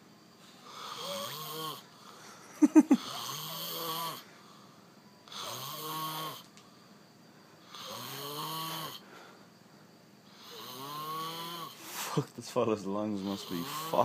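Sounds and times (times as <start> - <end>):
man snoring: 0.6 - 1.9, 2.8 - 4.2, 5.3 - 6.4, 7.7 - 9.0, 10.3 - 11.8, 13.2 - 14.0.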